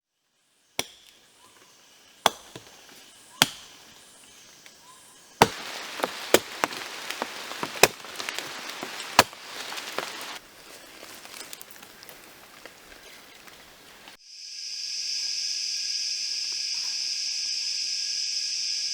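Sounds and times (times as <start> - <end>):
axe chopping into tree trunk: 0.8 - 1.2, 2.2 - 4.0, 5.4 - 10.4
wood splintering and knocks: 0.8 - 1.2, 2.2 - 3.9, 5.4 - 10.4.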